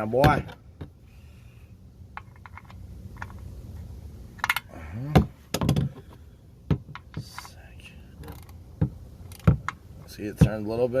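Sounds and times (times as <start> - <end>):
person grunting with effort: 4.7 - 5.3.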